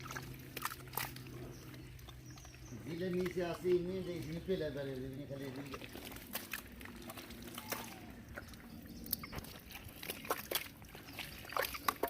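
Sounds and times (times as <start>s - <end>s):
mud squelching: 0.0s - 12.0s
water splashing: 0.0s - 12.0s.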